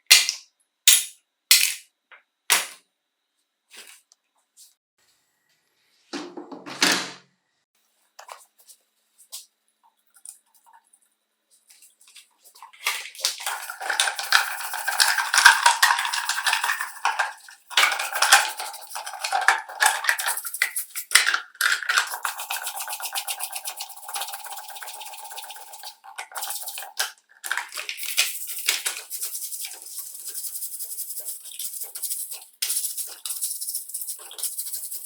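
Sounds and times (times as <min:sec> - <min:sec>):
small metal parts clattering: 0:13.4 - 0:22.4.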